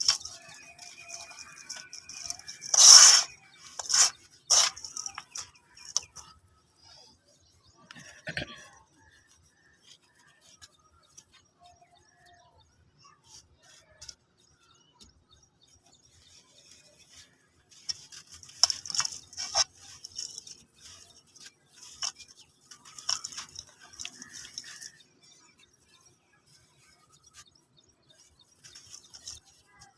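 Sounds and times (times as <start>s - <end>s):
brittle ash crunching: 0.0s - 6.3s, 17.8s - 25.4s.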